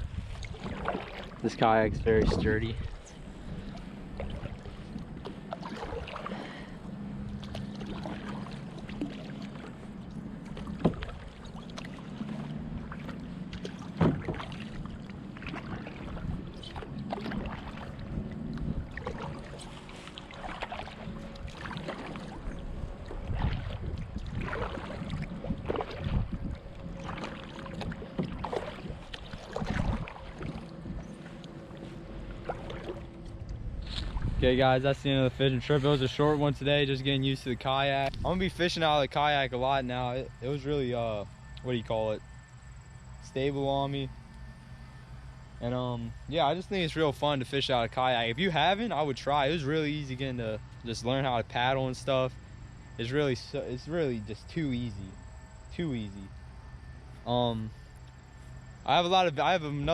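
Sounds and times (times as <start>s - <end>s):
paddle strokes splashing: 0.0s - 34.4s.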